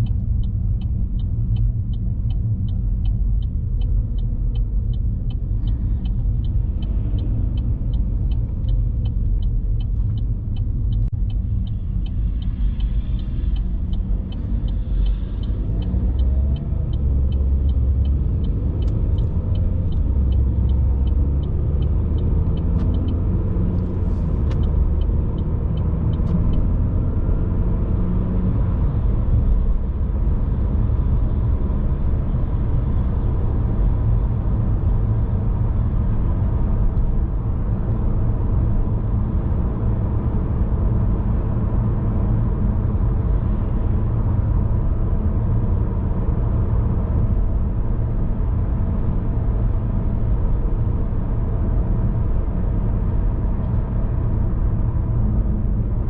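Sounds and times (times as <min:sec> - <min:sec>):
light ticking: 0:00.0 - 0:27.0
car road and engine rumble: 0:00.0 - 0:56.0.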